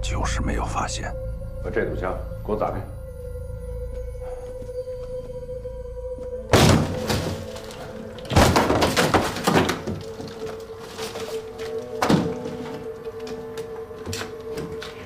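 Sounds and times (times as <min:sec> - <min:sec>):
wall crashing and crumbling: 0:06.5 - 0:13.0.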